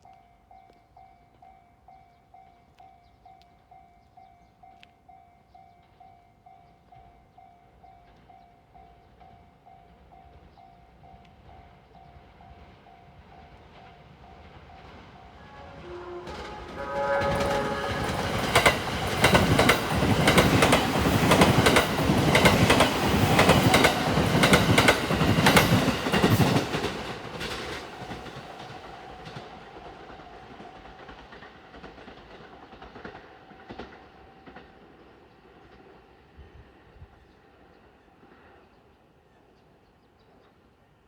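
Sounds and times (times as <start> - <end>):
train running noise: 8.0 - 36.9
train music horn playing a tune: 15.3 - 20.2.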